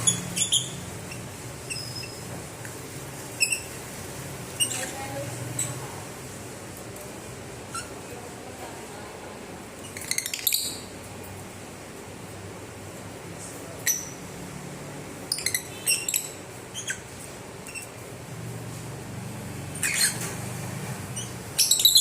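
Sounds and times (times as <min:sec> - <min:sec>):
lovebirds chirping: 0:00.0 - 0:02.3, 0:15.3 - 0:17.9, 0:21.1 - 0:22.0.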